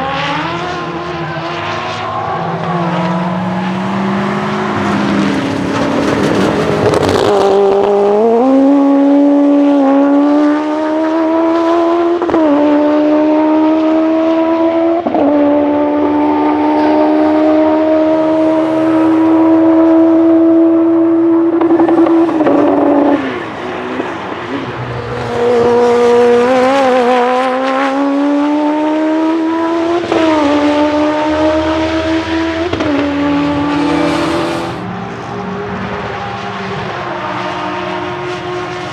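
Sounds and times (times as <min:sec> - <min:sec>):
motorcycle engine revving through gears: 0:00.0 - 0:38.9.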